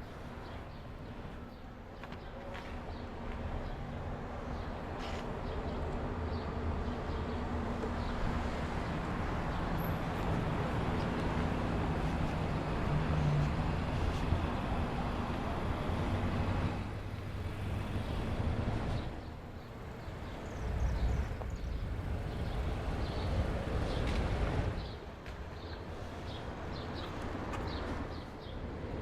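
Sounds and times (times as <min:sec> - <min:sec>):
tyres on wet road: 0:07.7 - 0:28.1.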